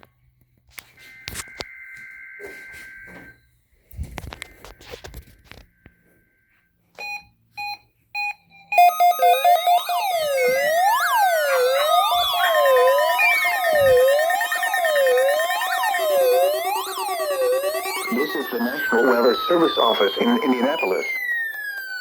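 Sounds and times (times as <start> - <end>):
electronic alarm wailing: 7.6 - 22.0.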